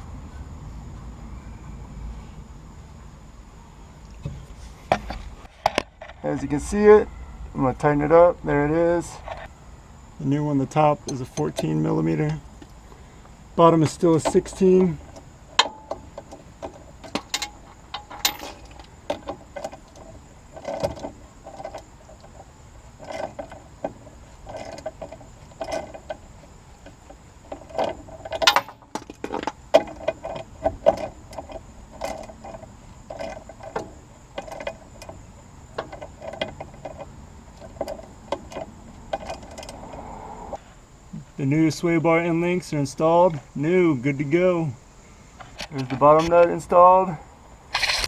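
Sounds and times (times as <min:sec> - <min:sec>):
ratchet clicking: 0:47.7 - 0:48.0.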